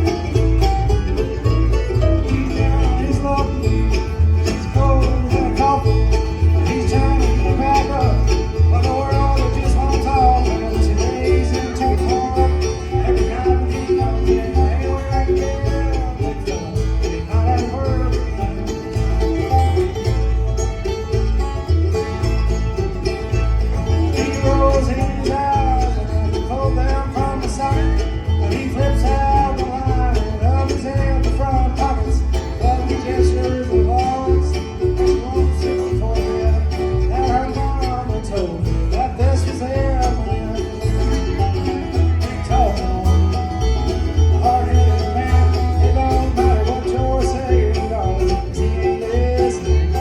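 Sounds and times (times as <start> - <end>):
country music with plucked strings: 0.0 - 50.0.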